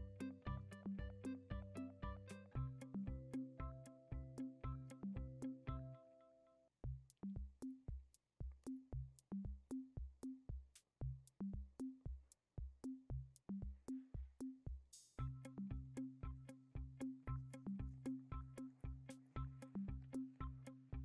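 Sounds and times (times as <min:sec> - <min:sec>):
drum machine beat: 0:00.0 - 0:05.9, 0:06.8 - 0:21.0
sustained keyboard chords: 0:00.0 - 0:06.3.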